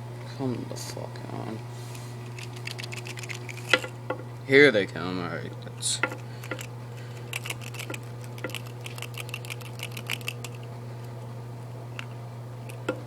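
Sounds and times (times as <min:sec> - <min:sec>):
shotgun pellets clicking and rattling: 0:02.3 - 0:03.9, 0:06.0 - 0:10.7.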